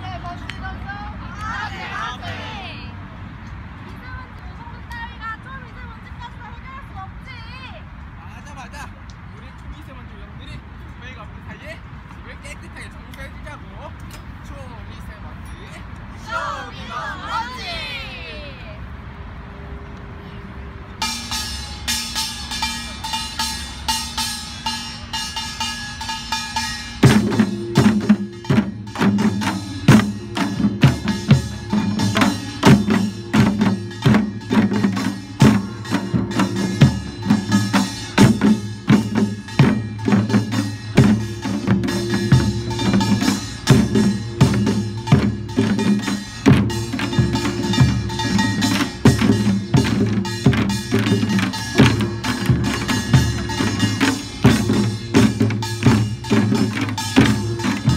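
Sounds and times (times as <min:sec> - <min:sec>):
percussion ensemble playing: 0:00.0 - 0:18.5, 0:20.9 - 0:57.9
deep drums beating: 0:26.4 - 0:57.9.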